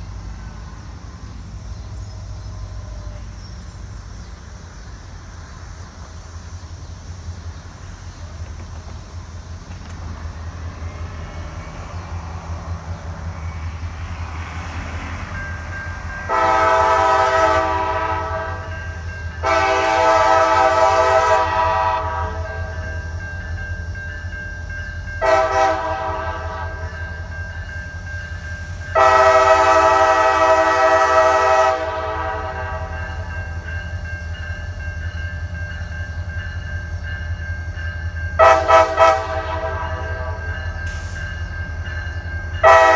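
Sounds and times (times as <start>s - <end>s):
locomotive air horn blasts: 16.2s - 22.8s, 25.2s - 27.0s, 28.9s - 33.3s, 38.4s - 41.2s, 42.6s - 42.9s.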